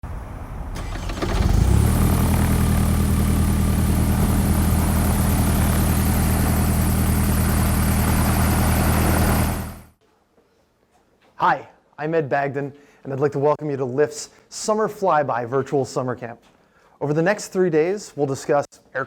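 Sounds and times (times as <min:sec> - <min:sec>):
propeller aircraft engine: 0:00.8 - 0:10.0.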